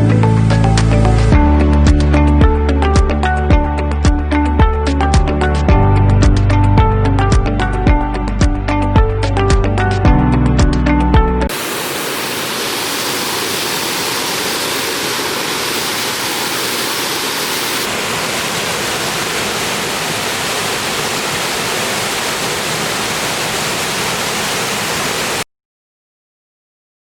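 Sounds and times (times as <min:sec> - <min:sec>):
waterfall rushing: 0:11.5 - 0:25.4.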